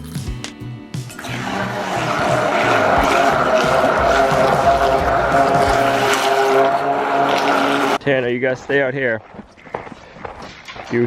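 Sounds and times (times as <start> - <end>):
background music with beat: 0.0 - 6.9
loud steady rushing noise: 1.8 - 8.0.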